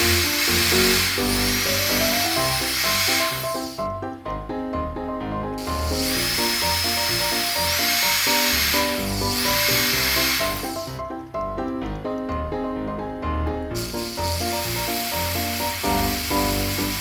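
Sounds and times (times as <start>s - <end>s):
small power tool whirring: 0.0s - 3.9s, 5.6s - 11.0s, 13.8s - 17.0s.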